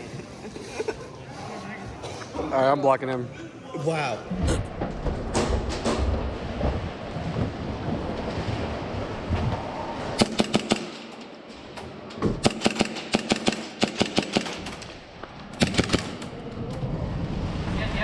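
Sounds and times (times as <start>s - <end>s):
airsoft guns firing: 10.2s - 11.3s, 12.4s - 16.4s.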